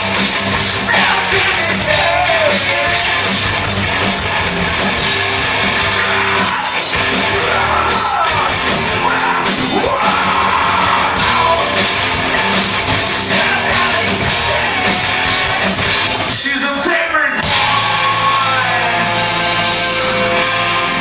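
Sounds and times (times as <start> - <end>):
heavy rock band playing: 0.0 - 21.0
shouted vocal: 0.7 - 3.4, 5.7 - 12.0, 13.1 - 20.4.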